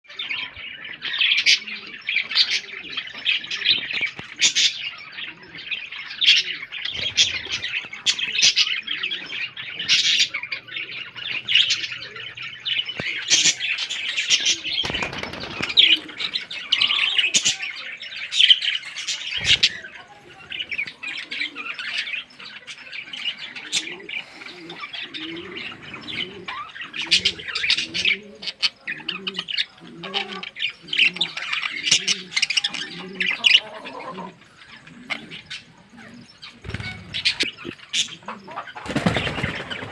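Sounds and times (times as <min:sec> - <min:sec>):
pet birds chirping: 0:00.1 - 0:39.9
pigeons cooing: 0:00.1 - 0:39.9
wings fluttering: 0:13.0 - 0:17.6, 0:36.6 - 0:37.6, 0:38.8 - 0:39.9.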